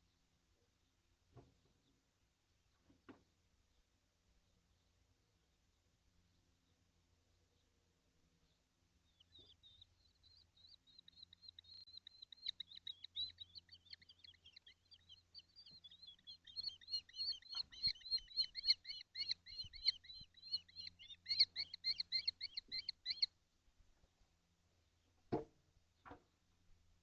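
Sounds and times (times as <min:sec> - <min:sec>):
kestrel calling shrilly: 0:09.2 - 0:23.3.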